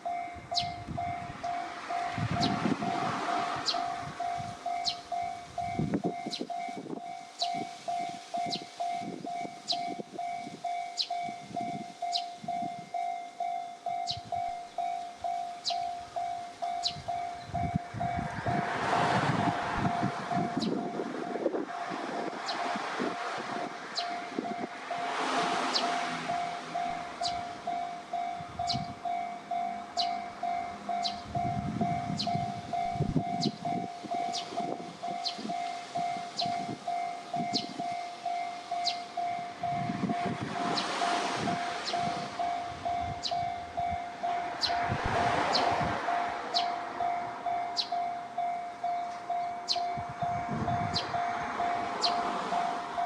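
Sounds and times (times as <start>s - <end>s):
higher falling chirp: 0.0s - 2.7s, 3.6s - 17.8s, 32.0s - 39.5s
electronic warning bell ringing: 0.0s - 18.8s, 23.6s - 45.0s, 46.0s - 53.0s
train rumbling over crossing: 0.0s - 53.0s.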